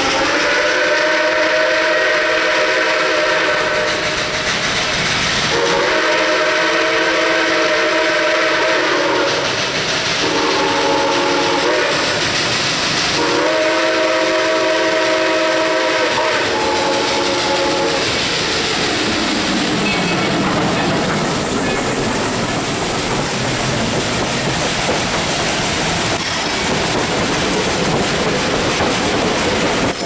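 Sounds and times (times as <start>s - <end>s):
steam locomotive chime whistle: 0.0s - 4.2s, 5.5s - 9.6s, 10.2s - 12.4s, 13.1s - 18.5s
steam engine working hard: 0.0s - 30.0s.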